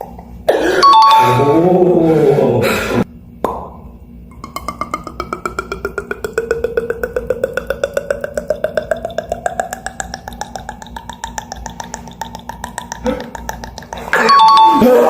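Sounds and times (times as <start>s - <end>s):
beatboxed water-drop mouth clicks: 4.3s - 14.4s.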